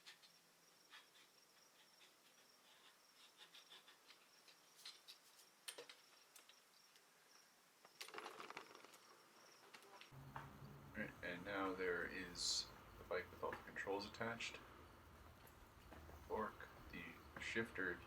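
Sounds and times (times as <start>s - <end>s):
rattle and rustle: 7.8s - 10.1s.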